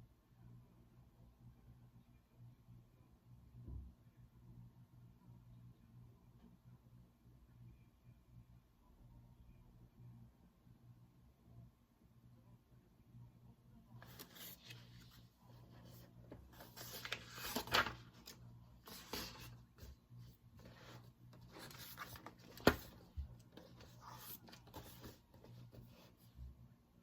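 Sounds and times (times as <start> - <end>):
paper rustling and scraping: 14.0 - 20.0, 20.6 - 26.2.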